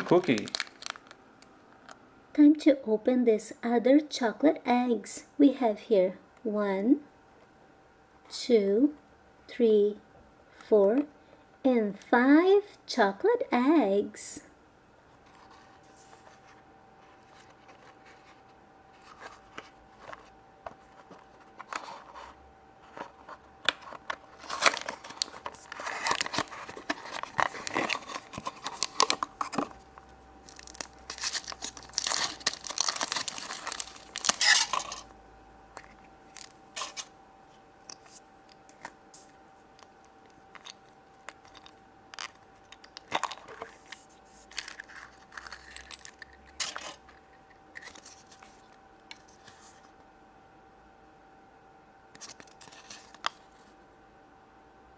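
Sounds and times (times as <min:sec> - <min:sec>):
foil wrappers crinkling: 0:00.0 - 0:01.2, 0:23.0 - 0:35.1, 0:35.8 - 0:37.1, 0:37.9 - 0:49.6.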